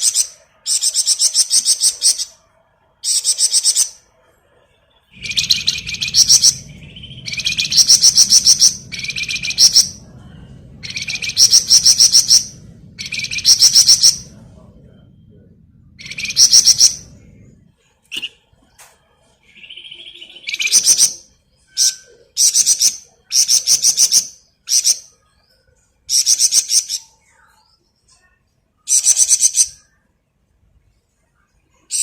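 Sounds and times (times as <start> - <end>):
songbird rapid rattling trills: 5.2 - 10.0.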